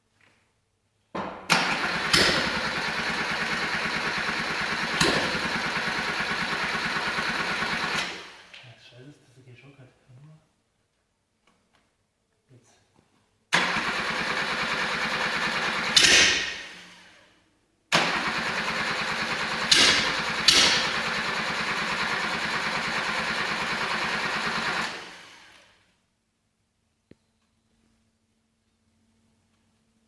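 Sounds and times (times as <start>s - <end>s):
engine bursts: 1.5s - 8.6s, 13.5s - 17.3s, 17.9s - 25.8s.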